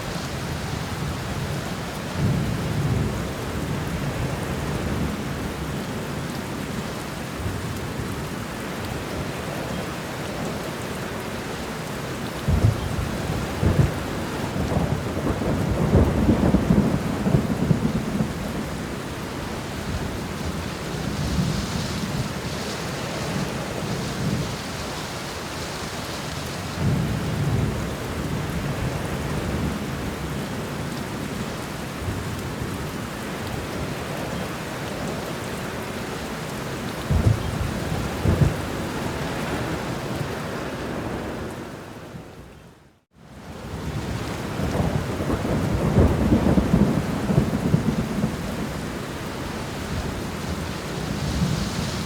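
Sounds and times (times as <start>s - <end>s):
steady rain: 0.0s - 52.0s
thunder rumbling: 12.4s - 30.4s, 37.0s - 40.1s, 43.8s - 52.0s.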